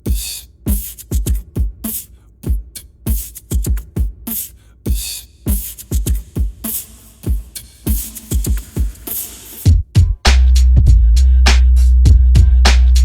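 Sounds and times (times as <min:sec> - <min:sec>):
music with heavy drum beat: 0:00.0 - 0:13.0.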